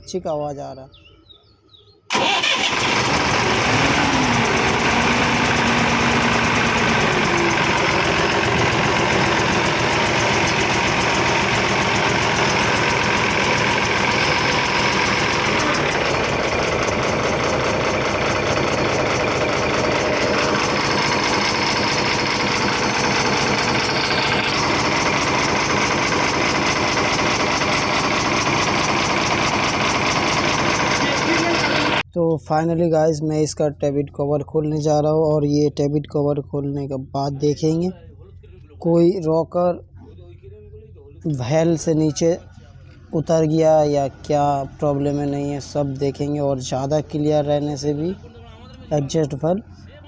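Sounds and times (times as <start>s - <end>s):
diesel truck engine idling: 2.1s - 32.0s, 40.3s - 50.0s
engine ticking: 2.1s - 32.0s.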